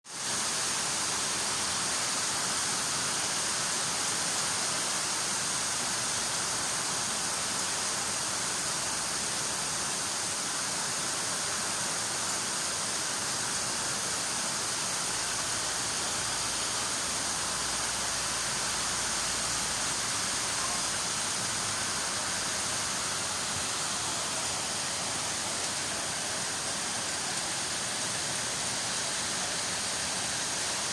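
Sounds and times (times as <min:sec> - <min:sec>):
steady rain: 0:00.1 - 0:30.9.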